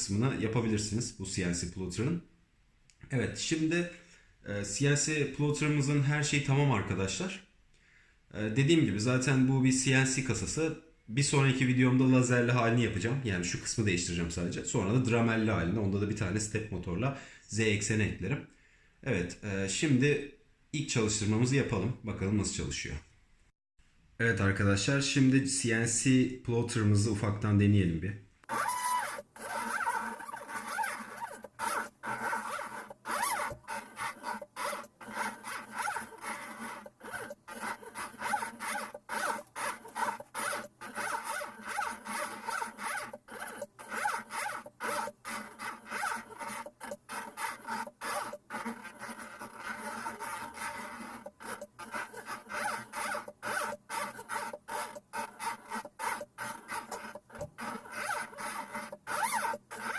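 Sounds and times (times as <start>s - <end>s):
stepper motors buzzing whine: 28.5s - 59.9s.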